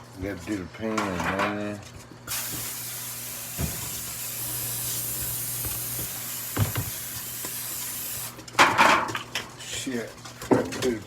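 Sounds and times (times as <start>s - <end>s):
aerosol spray hissing: 2.3s - 8.3s.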